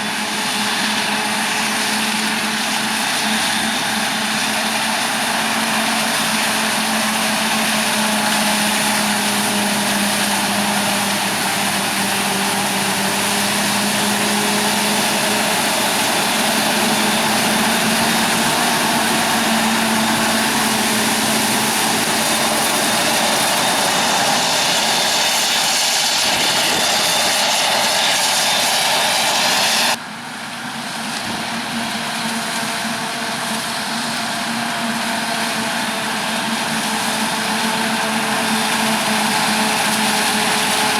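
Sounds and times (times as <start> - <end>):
farm machinery engine drone: 0.0 - 40.9
wide noisy rush: 0.1 - 31.7.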